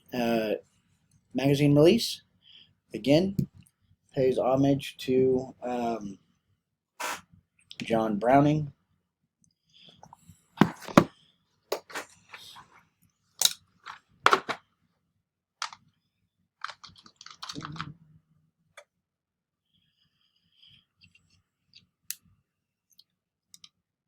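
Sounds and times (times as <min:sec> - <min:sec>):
metal clicks of pistol parts: 0:13.4 - 0:13.6.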